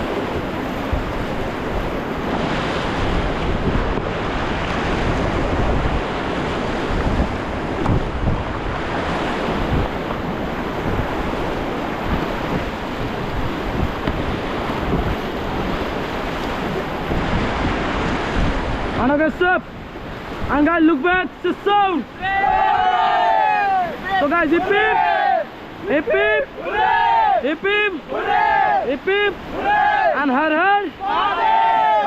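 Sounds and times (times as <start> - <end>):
wind buffeting microphone: 0.0 - 19.0
rushing river water: 0.0 - 32.0.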